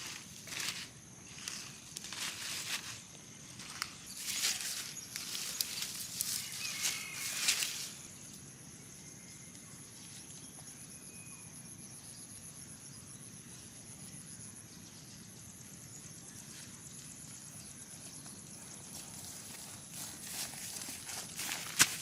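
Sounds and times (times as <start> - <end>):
high-pitched insect trilling: 0.0 - 9.5
rural background hiss: 0.0 - 11.0, 12.0 - 22.0.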